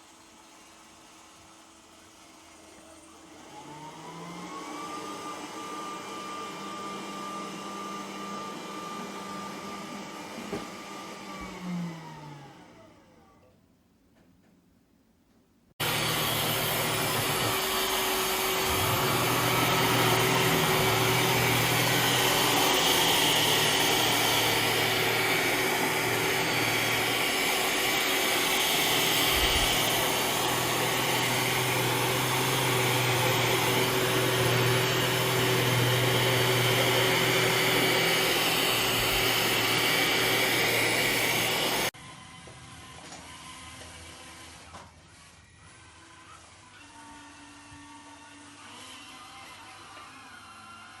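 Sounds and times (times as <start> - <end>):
robot vacuum whirring: 15.8 - 44.8.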